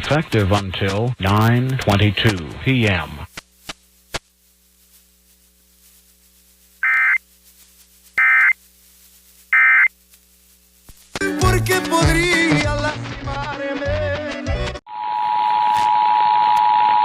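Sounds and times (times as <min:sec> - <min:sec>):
digital data screech bursts: 0:06.8 - 0:07.2, 0:08.2 - 0:08.6, 0:09.6 - 0:09.9.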